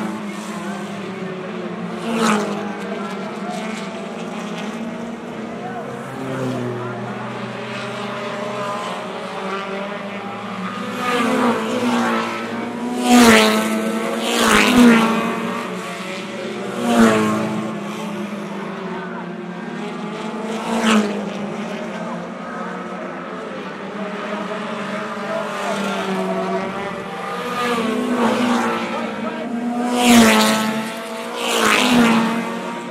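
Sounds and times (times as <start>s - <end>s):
race car engines droning: 0.0s - 32.9s
race cars passing close: 0.0s - 32.9s.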